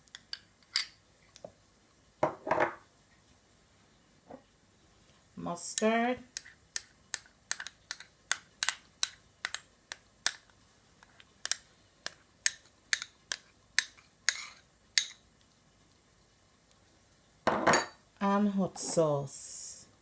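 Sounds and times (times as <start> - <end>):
spoon tapping a container: 6.4 - 9.6, 12.5 - 15.2.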